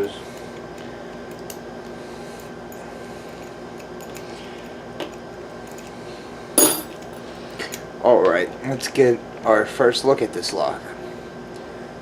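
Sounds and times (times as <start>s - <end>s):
sharp metallic clink: 6.6s - 6.9s.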